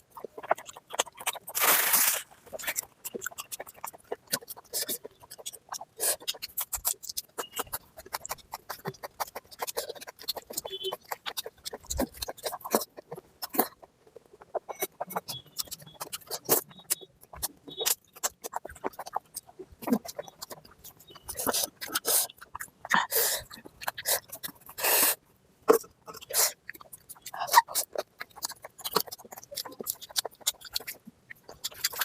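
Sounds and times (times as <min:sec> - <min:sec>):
person chewing food: 0:00.0 - 0:32.0
slurping sounds: 0:00.4 - 0:13.8
wet lip smacks and clicks: 0:02.5 - 0:32.0.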